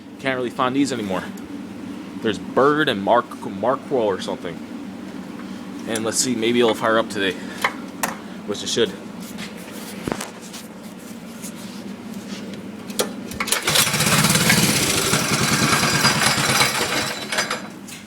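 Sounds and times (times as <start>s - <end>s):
small engine running: 13.4s - 17.7s.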